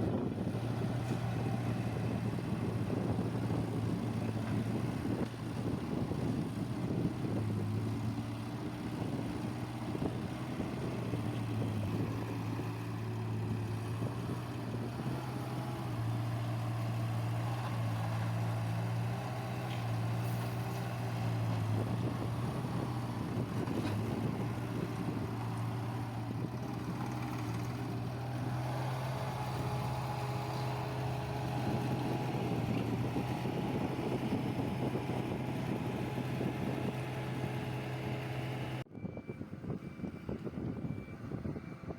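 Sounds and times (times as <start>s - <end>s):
diesel engine running: 0.0s - 41.9s.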